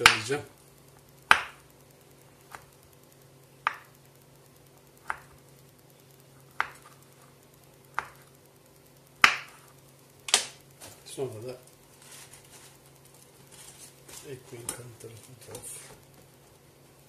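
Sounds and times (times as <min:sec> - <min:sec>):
knife chopping meat on board: 0:00.0 - 0:00.3, 0:01.3 - 0:01.6, 0:09.2 - 0:09.5.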